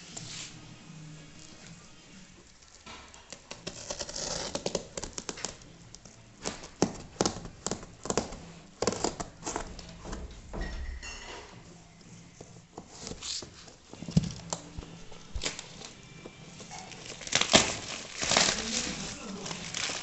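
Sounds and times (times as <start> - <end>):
packaging crinkling and tearing: 2.6 - 5.8, 14.4 - 16.0, 16.6 - 20.0.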